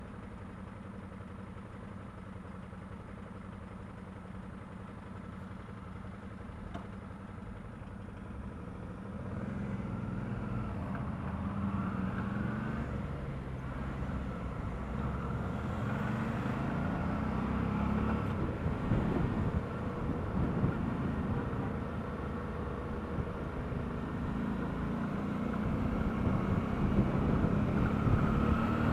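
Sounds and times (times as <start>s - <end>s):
motorcycle engine revving: 9.0s - 28.9s.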